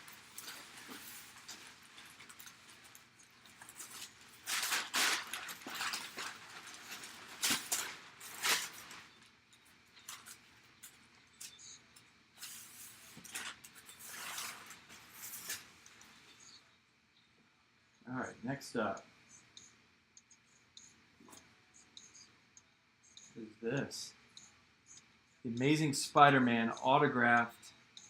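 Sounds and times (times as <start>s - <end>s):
packaging rustling and crinkling: 0.0s - 9.3s, 10.0s - 11.0s, 12.4s - 15.8s.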